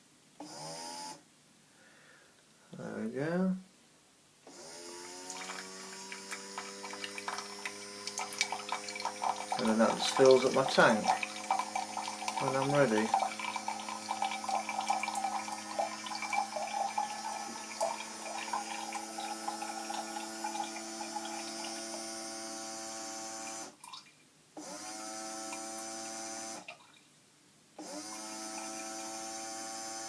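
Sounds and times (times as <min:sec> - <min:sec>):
electric water pump humming: 0:04.5 - 0:23.8, 0:24.6 - 0:26.8, 0:27.8 - 0:30.0
water trickling and dripping: 0:05.3 - 0:21.8.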